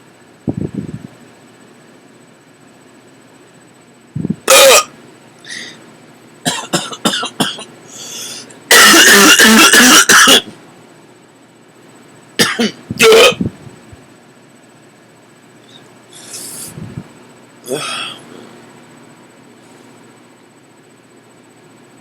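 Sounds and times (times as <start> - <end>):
person hiccuping: 4.4 - 4.9, 8.7 - 10.5, 12.4 - 13.5, 17.7 - 18.2.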